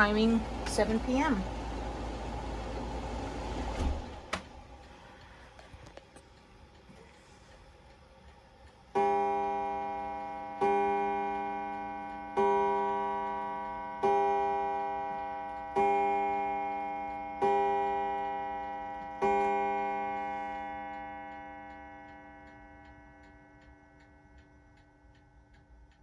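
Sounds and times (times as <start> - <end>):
mantel clock striking: 0.0 - 3.5, 8.9 - 26.0.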